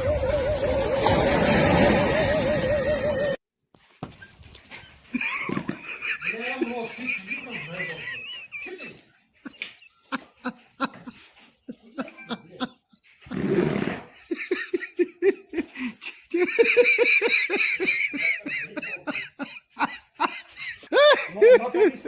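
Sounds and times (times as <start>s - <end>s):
people laughing hard: 5.1s - 13.0s, 14.0s - 22.0s.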